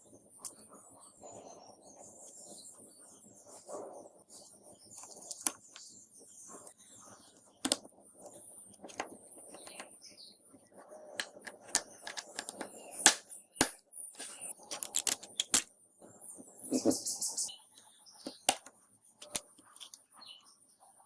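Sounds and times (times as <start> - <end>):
hand tools clicking and tapping: 11.2 - 15.7.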